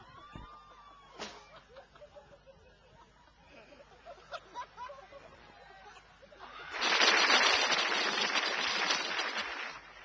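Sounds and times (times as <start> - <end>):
faint crowd chatter: 0.0 - 7.0
audience clapping and cheering: 6.6 - 10.0.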